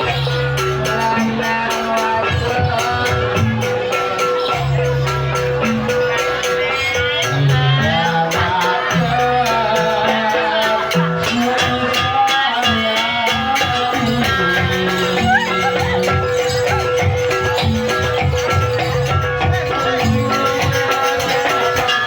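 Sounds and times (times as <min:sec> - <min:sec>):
drums beating: 0:00.0 - 0:22.0
wavering melody line: 0:12.7 - 0:22.0.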